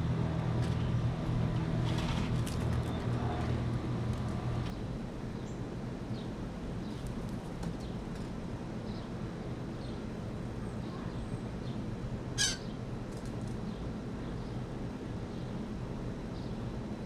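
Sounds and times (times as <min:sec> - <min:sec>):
loud harsh bird call: 0:12.4 - 0:12.8.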